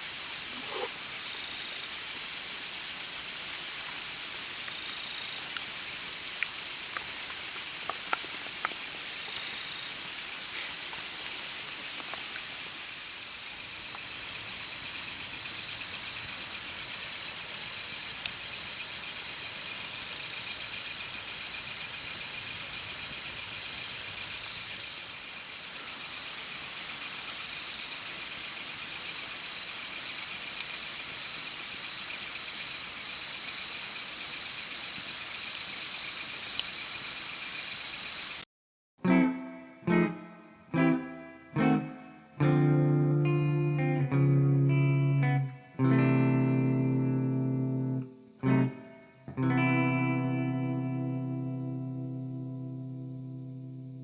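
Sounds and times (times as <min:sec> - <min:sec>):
crickets chirring: 0:00.0 - 0:38.4
campfire pops and crackles: 0:00.2 - 0:38.4.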